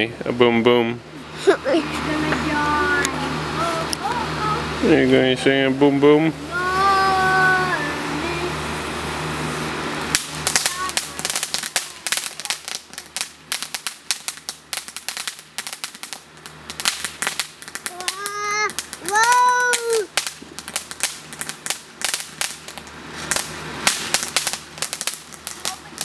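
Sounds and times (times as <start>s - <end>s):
fireworks crackling: 0.0s - 26.0s
high-pitched firework wails: 6.4s - 26.0s.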